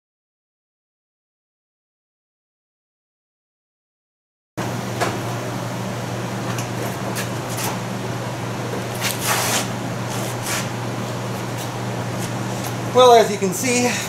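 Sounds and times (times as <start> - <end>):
steady low hum: 4.6 - 14.0.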